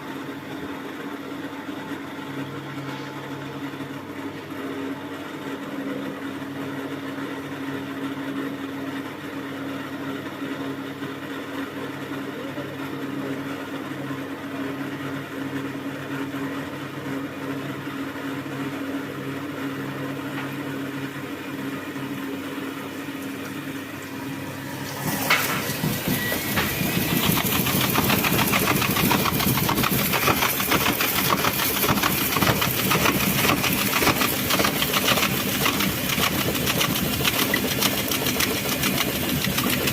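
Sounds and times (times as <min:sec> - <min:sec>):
washing machine humming: 0:00.0 - 0:39.9
washing machine rushing and rattling: 0:23.0 - 0:39.9.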